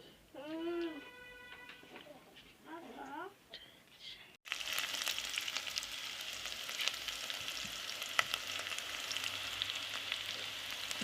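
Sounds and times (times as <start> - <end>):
food sizzling in a pan: 4.4 - 11.0
crackles and pops: 4.5 - 11.0.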